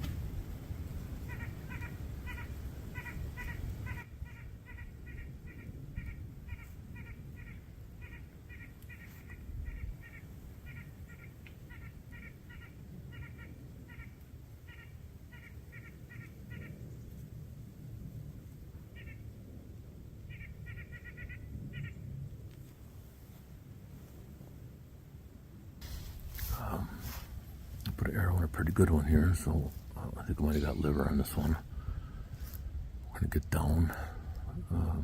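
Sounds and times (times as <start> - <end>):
animal calling in harsh notes: 1.2 - 16.7.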